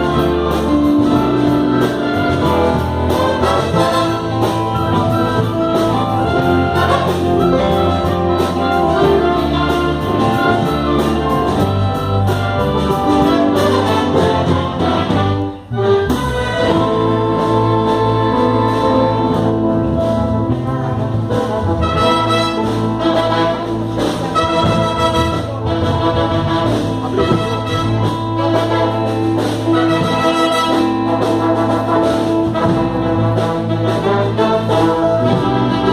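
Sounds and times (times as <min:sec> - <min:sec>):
brass band playing: 0:00.0 - 0:35.9.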